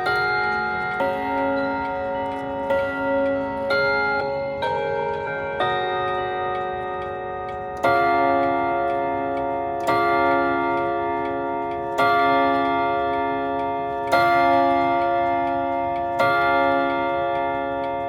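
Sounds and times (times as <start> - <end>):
clock striking the hour: 0.0 - 18.0
mantel clock chime note: 0.0 - 18.0.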